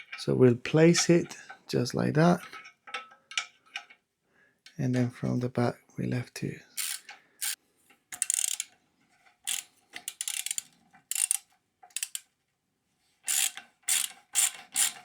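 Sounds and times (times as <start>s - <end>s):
hand driver ratcheting clicks: 6.8s - 7.6s, 8.2s - 8.7s, 9.5s - 12.2s, 13.3s - 15.0s.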